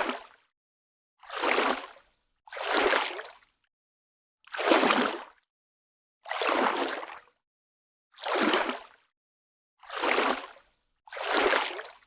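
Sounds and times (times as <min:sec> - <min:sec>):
wading step sloshing splash: 0:11.2 - 0:12.0.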